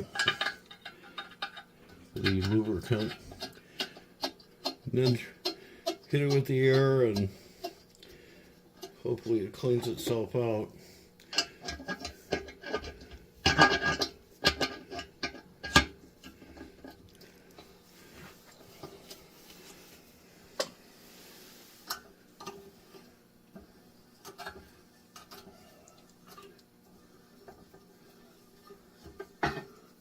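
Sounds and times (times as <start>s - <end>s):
metallic clicks and scraping: 0.0s - 8.0s.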